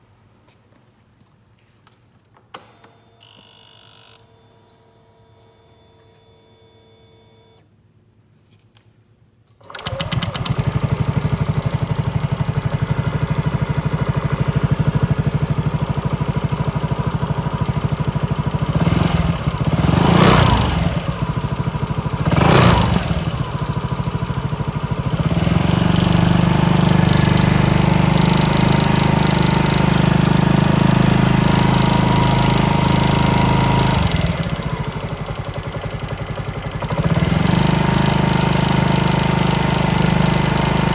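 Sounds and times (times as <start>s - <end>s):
scooter engine starting and idling: 9.5s - 40.9s
scooter engine revving: 9.6s - 40.9s.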